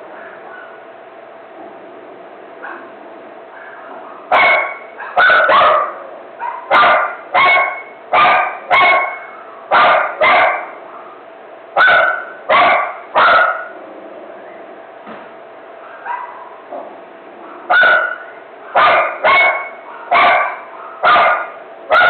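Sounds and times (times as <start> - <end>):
dog barking: 0.2 - 0.8, 2.6 - 11.2, 11.8 - 13.8, 15.8 - 22.0.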